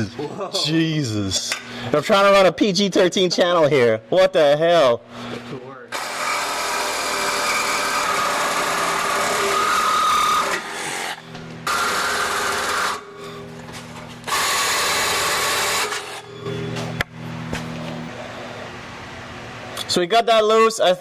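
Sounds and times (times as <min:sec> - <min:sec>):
power tool cutting steel pipe: 0:06.0 - 0:13.0, 0:14.2 - 0:16.2.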